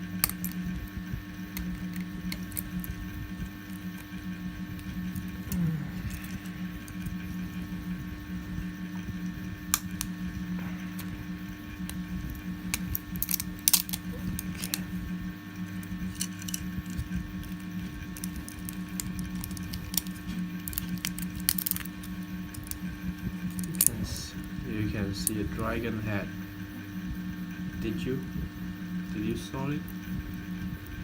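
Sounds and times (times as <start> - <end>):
steady low hum: 0.0 - 31.0
plastic snapping off with tools: 12.7 - 14.8.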